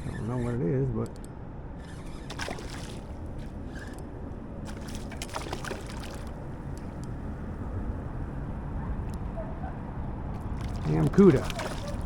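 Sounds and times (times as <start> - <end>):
water sloshing around boat: 1.8 - 7.0, 10.4 - 12.0
sharp splashing clicks: 4.7 - 7.1.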